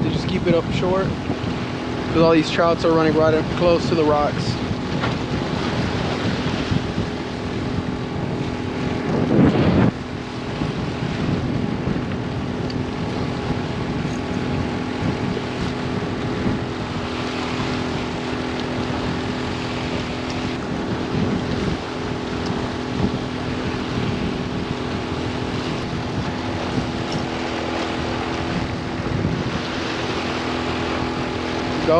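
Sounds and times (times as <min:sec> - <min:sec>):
low engine-like hum: 0:00.0 - 0:31.9
wind buffeting microphone: 0:00.0 - 0:31.9.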